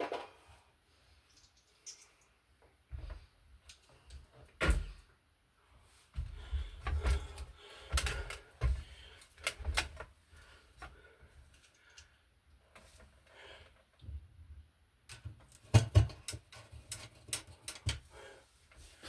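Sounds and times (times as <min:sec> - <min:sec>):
hardware clicks and knocks: 0:15.1 - 0:18.1.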